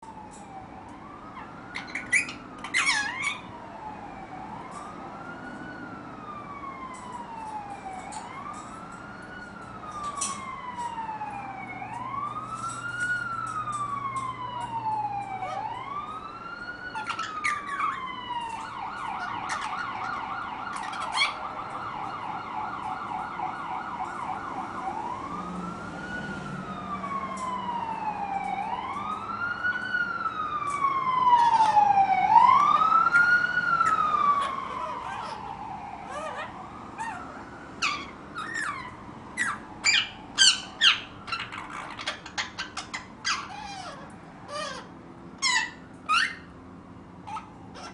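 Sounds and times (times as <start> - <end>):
ambulance siren wailing: 0.0 - 47.9
parrot chirps and clicks: 1.4 - 3.5, 16.9 - 21.5, 36.2 - 46.5.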